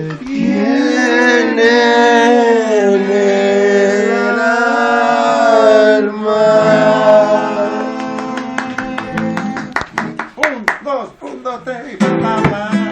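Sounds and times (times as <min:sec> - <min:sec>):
voices singing a long note: 0:00.0 - 0:09.8
acoustic guitar strums: 0:12.0 - 0:12.9.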